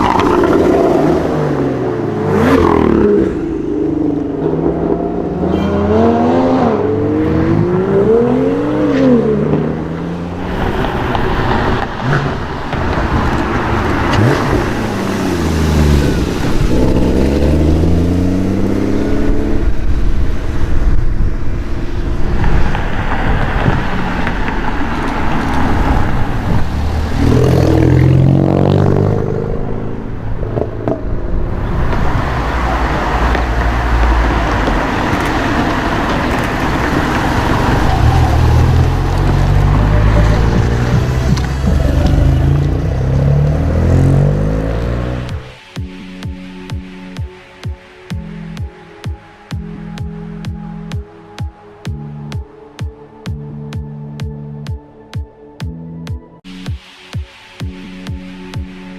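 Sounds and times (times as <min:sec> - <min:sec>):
sports car engines revving past: 0:00.0 - 0:45.6.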